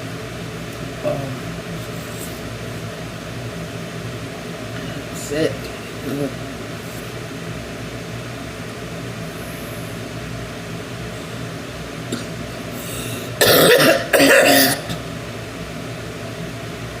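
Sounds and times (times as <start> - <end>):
steady background hum: 0.0 - 17.0
woman coughing: 13.4 - 15.0.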